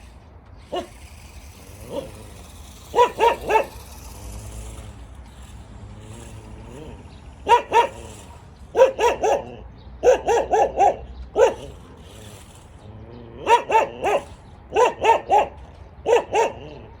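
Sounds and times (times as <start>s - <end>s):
dog barking: 2.9s - 3.8s, 7.4s - 11.8s, 13.4s - 16.8s.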